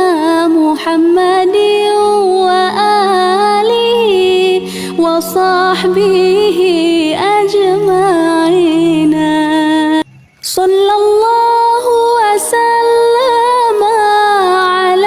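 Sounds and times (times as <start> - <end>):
person singing melismatically: 0.0 - 14.2
steady low tone: 1.0 - 10.2.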